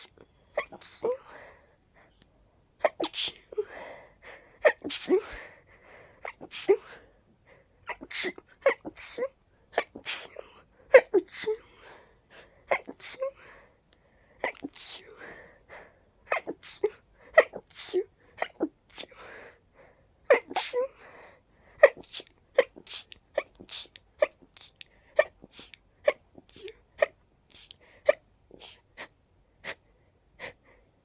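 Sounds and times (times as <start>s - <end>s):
person sneezing: 2.8s - 4.0s, 4.6s - 5.4s, 7.9s - 11.7s, 16.3s - 19.2s, 20.3s - 21.0s, 21.8s - 28.8s.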